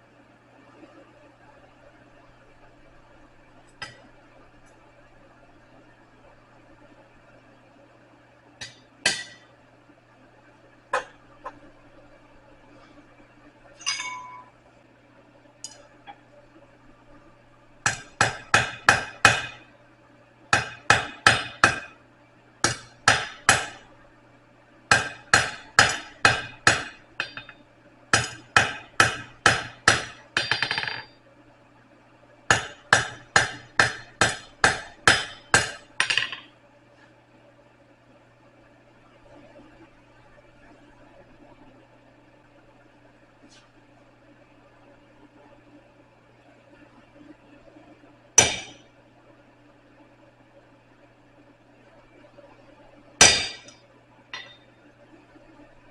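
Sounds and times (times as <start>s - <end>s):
hammer striking metal on anvil: 8.6s - 9.5s, 13.8s - 14.5s, 17.8s - 19.6s, 20.5s - 21.9s, 22.6s - 23.8s, 24.9s - 31.1s, 32.5s - 36.4s, 48.4s - 48.8s, 53.2s - 53.8s, 54.4s - 54.7s
knocks and clinks: 13.8s - 14.5s.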